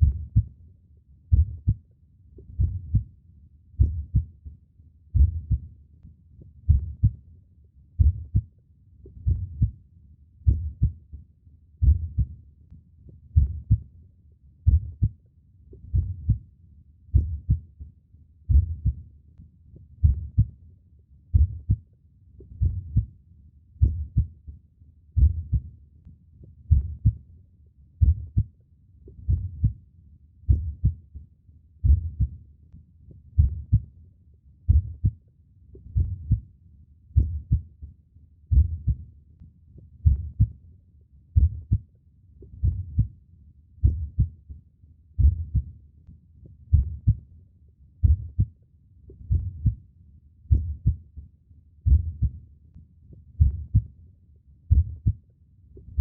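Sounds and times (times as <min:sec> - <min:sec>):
heartbeat thumps: 0:00.0 - 0:00.5, 0:01.3 - 0:01.8, 0:02.4 - 0:03.1, 0:03.8 - 0:04.4, 0:05.1 - 0:05.7, 0:06.6 - 0:07.2, 0:08.0 - 0:08.5, 0:09.1 - 0:09.8, 0:10.4 - 0:11.1, 0:11.8 - 0:12.4, 0:13.3 - 0:13.9, 0:14.6 - 0:15.2, 0:15.8 - 0:16.4, 0:17.1 - 0:17.7, 0:18.5 - 0:19.0, 0:20.0 - 0:20.5, 0:21.3 - 0:21.8, 0:22.5 - 0:23.1, 0:23.8 - 0:24.3, 0:25.2 - 0:25.7, 0:26.7 - 0:27.2, 0:28.0 - 0:28.5, 0:29.2 - 0:29.8, 0:30.5 - 0:31.0, 0:31.8 - 0:32.4, 0:33.3 - 0:33.9, 0:34.7 - 0:35.2, 0:35.8 - 0:36.4, 0:37.2 - 0:37.6, 0:38.5 - 0:39.0, 0:40.0 - 0:40.5, 0:41.4 - 0:41.8, 0:42.5 - 0:43.1, 0:43.8 - 0:44.4, 0:45.2 - 0:45.7, 0:46.7 - 0:47.2, 0:48.0 - 0:48.5, 0:49.1 - 0:49.8, 0:50.5 - 0:51.1, 0:51.8 - 0:52.4, 0:53.4 - 0:53.9, 0:54.7 - 0:55.2, 0:55.8 - 0:56.0.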